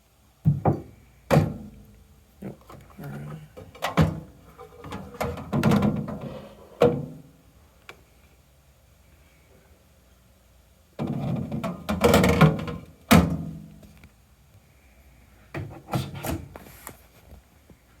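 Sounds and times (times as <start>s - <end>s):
clattering knocks and clunks: 3.6s - 7.1s.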